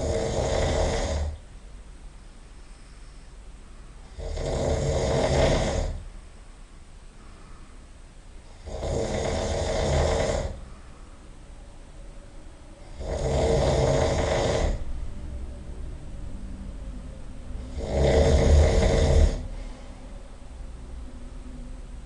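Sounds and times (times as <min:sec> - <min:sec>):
man snoring loudly: 0:00.0 - 0:01.4, 0:04.0 - 0:06.0, 0:08.5 - 0:10.6, 0:12.8 - 0:14.9, 0:17.6 - 0:19.6
quiet breathing: 0:00.0 - 0:01.5, 0:02.4 - 0:06.1, 0:07.1 - 0:22.0.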